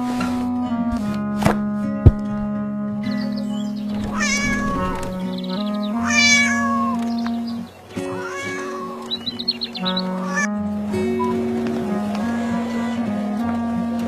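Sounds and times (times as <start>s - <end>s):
background music with sustained notes: 0.0s - 14.0s
cat meowing: 4.0s - 7.1s, 8.0s - 9.2s, 9.8s - 10.5s.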